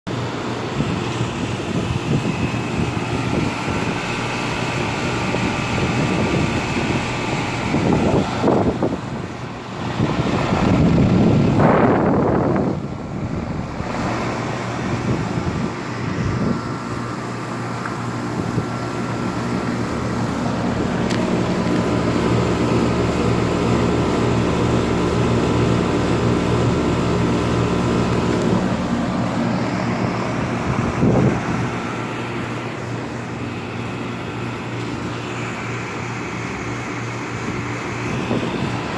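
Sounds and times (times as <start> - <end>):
compressor hum: 0.1 - 38.9
condenser fan whoosh: 0.1 - 38.9
loud rush of noise: 0.2 - 17.5.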